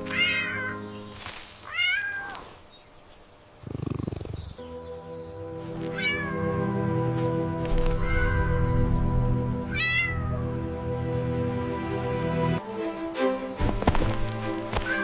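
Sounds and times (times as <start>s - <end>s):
background music with held notes: 0.0s - 1.6s, 4.5s - 15.0s
cat meowing: 1.7s - 2.5s, 5.9s - 6.6s, 7.9s - 8.6s, 9.7s - 10.5s.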